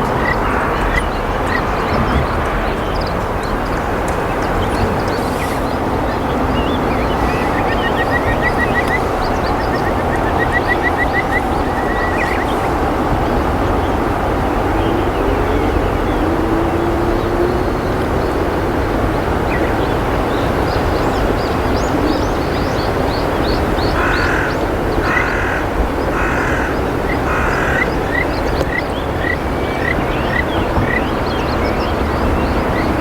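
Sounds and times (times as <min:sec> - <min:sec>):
crow cawing: 0:24.0 - 0:28.0.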